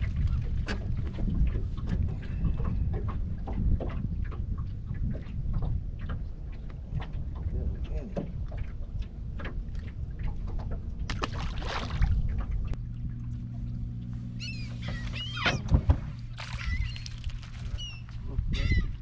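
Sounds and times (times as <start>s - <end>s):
steady low hum: 0.0s - 19.0s
water and wind noise: 0.0s - 19.0s
seabirds squawking: 14.3s - 19.0s.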